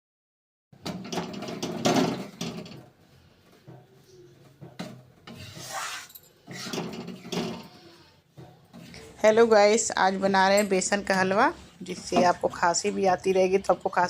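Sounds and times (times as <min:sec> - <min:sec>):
spatula scraping a pan: 0:05.2 - 0:09.4.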